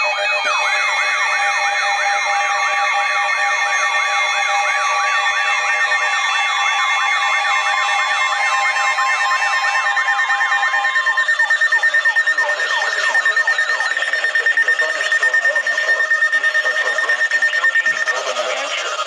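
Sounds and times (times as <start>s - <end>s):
rapid falling siren tone: 5.0s - 19.0s
steady high beep tone: 5.2s - 19.0s.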